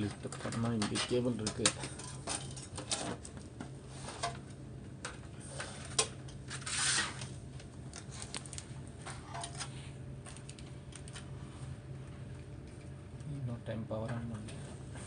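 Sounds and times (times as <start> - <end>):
faint steady hum: 0.0 - 15.0
scraping rustle: 6.5 - 7.3.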